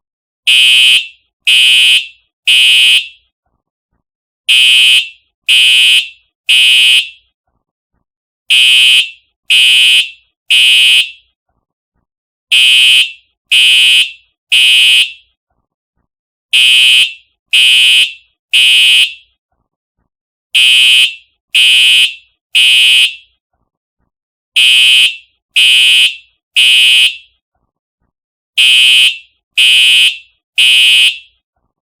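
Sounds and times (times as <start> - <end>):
fire alarm horn blasts: 0.5 - 3.2, 4.5 - 7.2, 8.5 - 11.2, 12.5 - 15.2, 16.5 - 19.3, 20.6 - 23.3, 24.6 - 27.4, 28.6 - 31.4.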